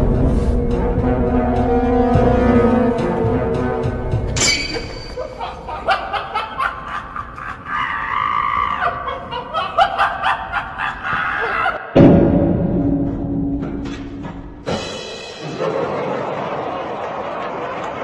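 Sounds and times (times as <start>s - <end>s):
snickering and laughter: 5.0s - 11.8s, 15.4s - 18.0s
loud low hit: 12.0s - 13.9s.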